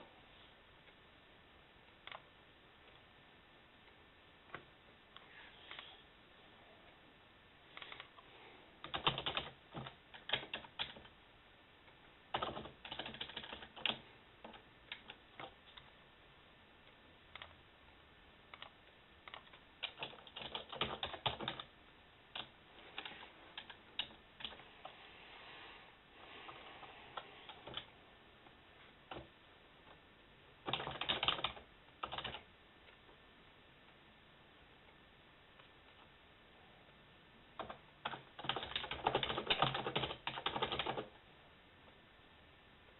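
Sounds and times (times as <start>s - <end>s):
keyboard typing clicks: 8.8s - 11.1s, 12.3s - 15.9s, 17.3s - 17.6s, 18.5s - 21.7s, 30.7s - 32.4s.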